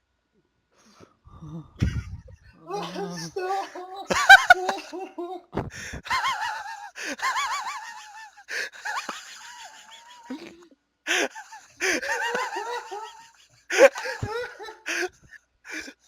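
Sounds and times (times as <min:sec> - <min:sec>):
wheezing laughter: 0:01.8 - 0:16.0
noisy gasps for breath: 0:05.6 - 0:06.1, 0:08.5 - 0:08.8, 0:11.1 - 0:12.2, 0:13.7 - 0:16.0.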